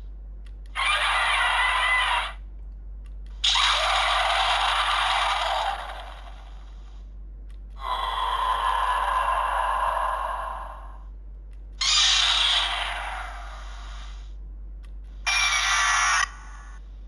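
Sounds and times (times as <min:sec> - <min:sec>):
electronic toy sound effects: 0:00.8 - 0:02.4, 0:03.4 - 0:06.7, 0:11.8 - 0:14.2, 0:15.3 - 0:16.8.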